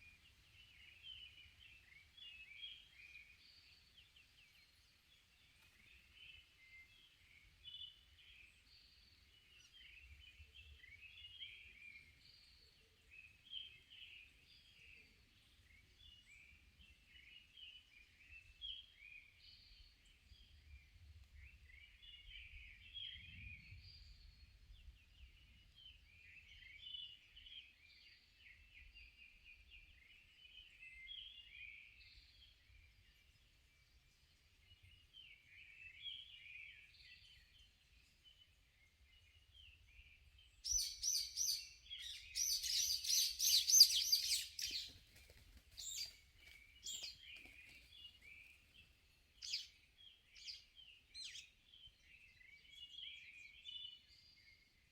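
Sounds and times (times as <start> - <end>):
birds chirping and trilling: 29.7 - 54.7
nearby bird rapid high calls: 40.7 - 46.2.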